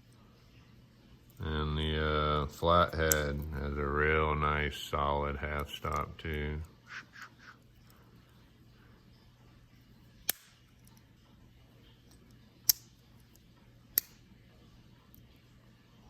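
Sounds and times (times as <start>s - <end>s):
pocket knife tools snapping: 3.1s - 3.5s, 10.3s - 10.6s, 12.7s - 13.0s, 14.0s - 14.2s.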